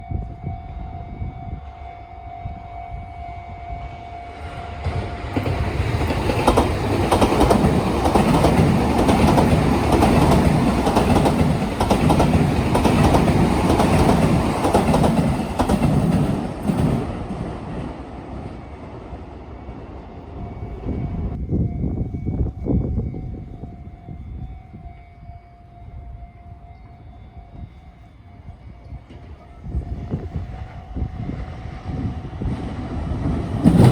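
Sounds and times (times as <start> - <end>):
train wheels clattering over rail joints: 4.9 - 17.9, 33.0 - 33.9.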